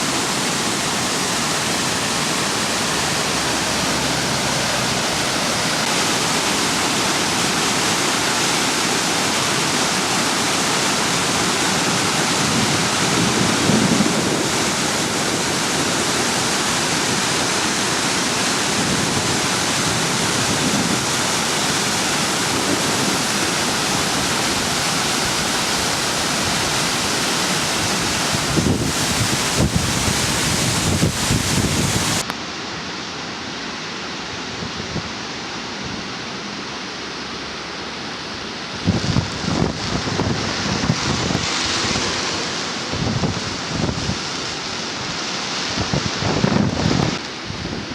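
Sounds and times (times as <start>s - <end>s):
rushing water in ravine: 0.0s - 47.9s
wind buffeting microphone: 12.3s - 15.8s, 27.6s - 32.2s, 38.8s - 47.9s.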